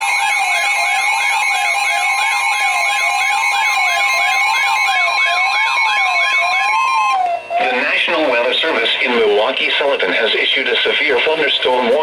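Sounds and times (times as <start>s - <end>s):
electronic siren sweeping: 0.0s - 8.8s
steady high alert tone: 0.0s - 12.0s.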